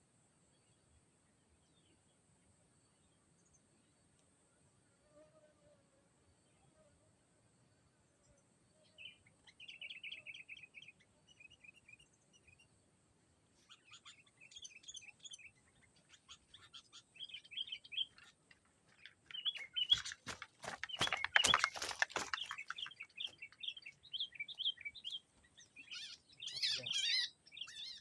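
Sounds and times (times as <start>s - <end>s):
bulbul chattering calls: 22.3s - 28.0s.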